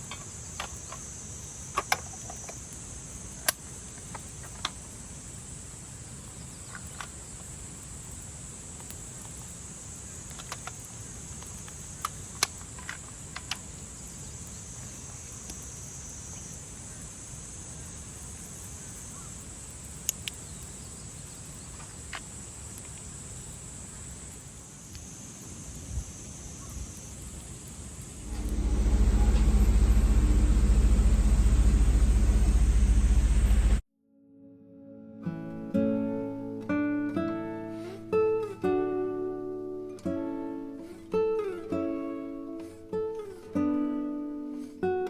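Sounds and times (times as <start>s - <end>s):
high-pitched insect drone: 0.0s - 33.8s
low background rumble: 28.2s - 33.8s.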